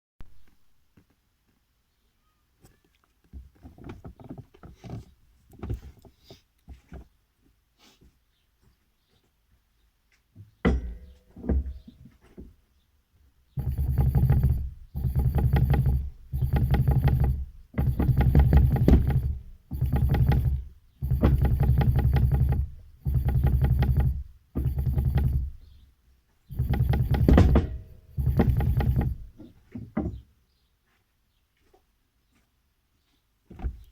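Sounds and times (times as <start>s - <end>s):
rattling knocks from car suspension: 13.6s - 25.8s, 26.5s - 30.2s.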